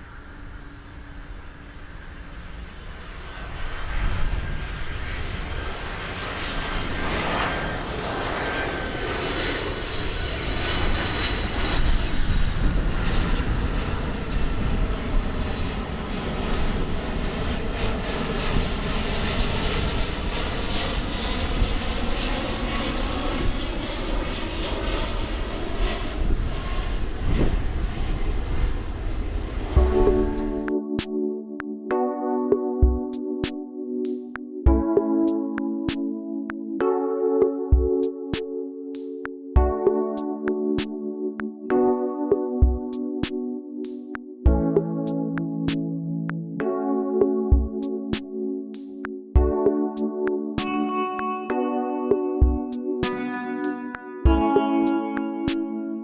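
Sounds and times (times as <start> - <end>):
jet airliner passing overhead: 0.0 - 31.1, 51.6 - 56.0.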